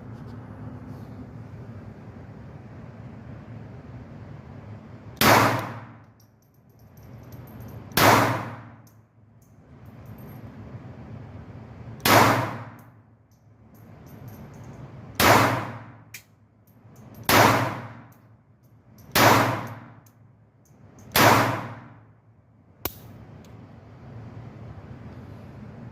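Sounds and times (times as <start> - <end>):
pistol shots: 5.2 - 6.0, 8.0 - 8.8, 12.0 - 12.8, 15.2 - 16.0, 17.3 - 18.1, 19.1 - 19.9, 21.1 - 22.0.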